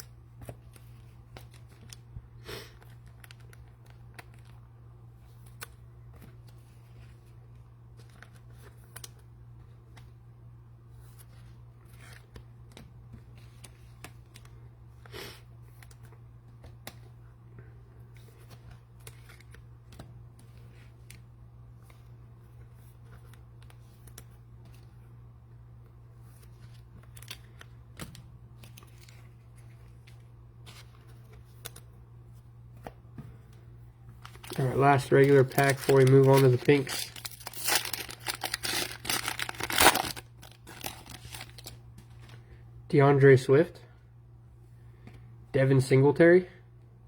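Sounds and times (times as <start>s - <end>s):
steady low hum: 0.0s - 47.0s
trading cards rustling: 0.1s - 10.2s, 18.0s - 25.0s, 26.1s - 42.5s.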